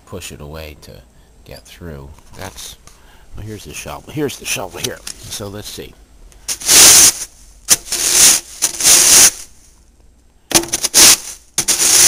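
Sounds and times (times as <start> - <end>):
snow shovel scraping: 6.5 - 9.5, 10.7 - 12.0.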